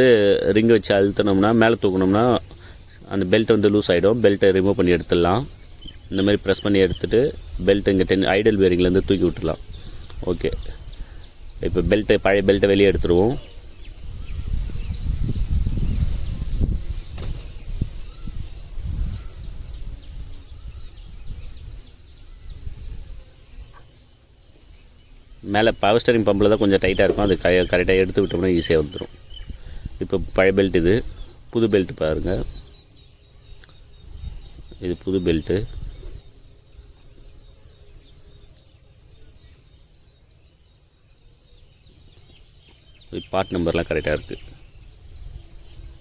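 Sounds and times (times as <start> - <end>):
insects chirring: 0.0 - 46.0
sharp knocks: 17.1 - 17.5.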